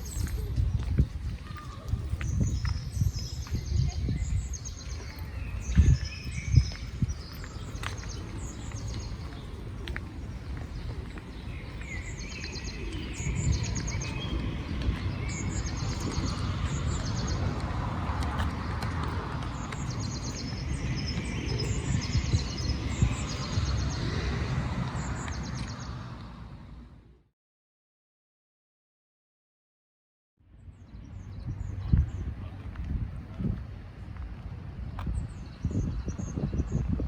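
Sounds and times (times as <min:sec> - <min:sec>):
small birds trilling: 0:00.0 - 0:26.1
low outdoor rumble: 0:03.6 - 0:27.1.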